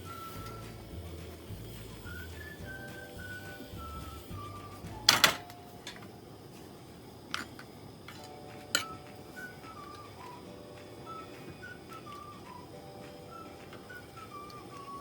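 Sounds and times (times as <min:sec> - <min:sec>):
faint whistled notes: 0:00.0 - 0:06.3, 0:08.2 - 0:15.0
dishes and utensils clinking: 0:07.3 - 0:10.4.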